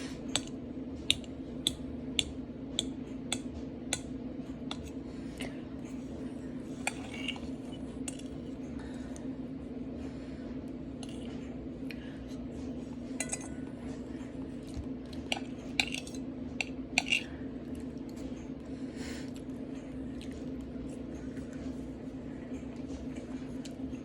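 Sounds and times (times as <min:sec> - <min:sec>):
steady low hum: 0:00.0 - 0:24.0
cutlery clinking against a plate: 0:06.8 - 0:07.5, 0:13.2 - 0:13.7, 0:15.2 - 0:17.4.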